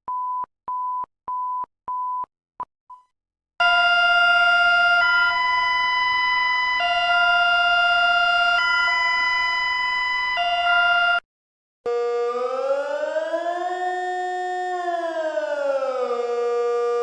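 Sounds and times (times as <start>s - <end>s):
two-tone emergency alarm: 3.6s - 11.2s, 11.9s - 17.0s.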